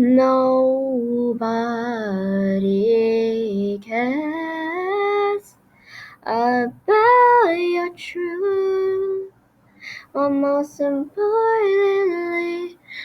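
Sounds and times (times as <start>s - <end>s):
woman singing unaccompanied: 0.0s - 5.5s, 6.1s - 9.3s, 9.9s - 13.0s.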